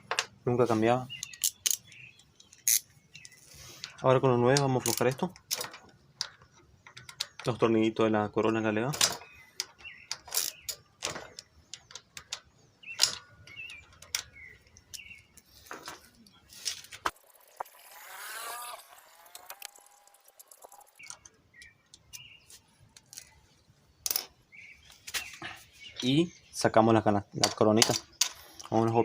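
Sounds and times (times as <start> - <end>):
wrench clicking on metal: 1.2 - 7.5.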